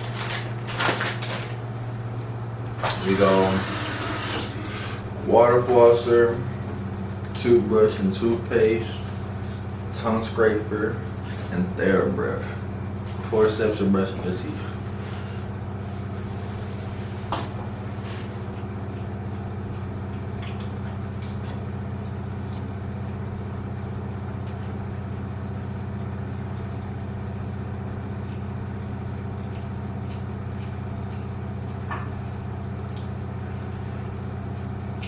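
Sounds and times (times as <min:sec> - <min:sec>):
small electric motor humming: 0:02.9 - 0:05.2.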